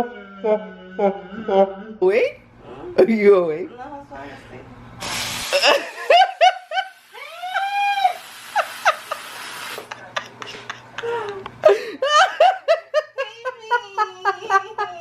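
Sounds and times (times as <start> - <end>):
person laughing: 5.5 - 15.0.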